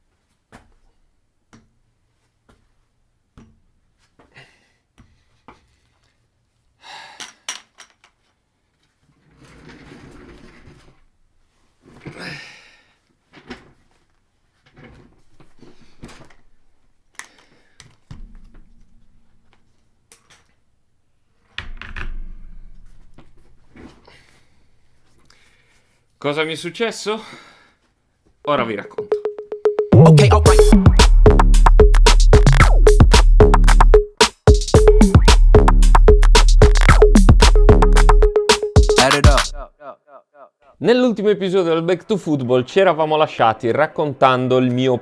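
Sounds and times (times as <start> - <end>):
knocks and clicks: 29.0 - 39.6.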